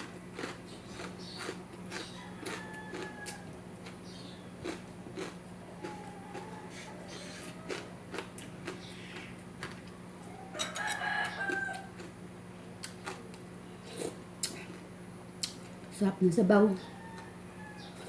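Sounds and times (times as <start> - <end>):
rooster crowing: 1.9 - 3.6, 5.6 - 8.2, 10.2 - 12.1, 16.8 - 18.0.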